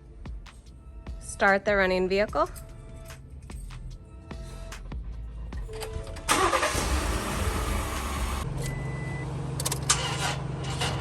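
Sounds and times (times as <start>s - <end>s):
car engine cranking and idling: 4.8s - 11.0s.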